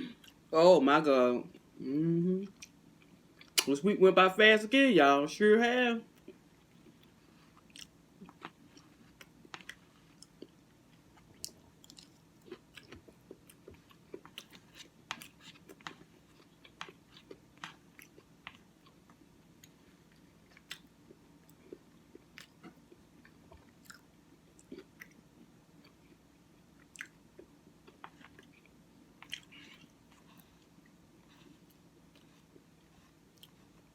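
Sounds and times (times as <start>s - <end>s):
person chewing with lip smacks: 11.2s - 25.2s, 26.8s - 33.6s.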